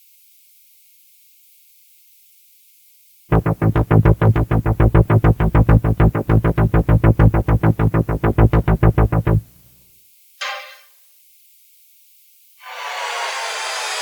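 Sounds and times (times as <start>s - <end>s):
low buzzy synthesized pulsing: 3.3s - 9.5s.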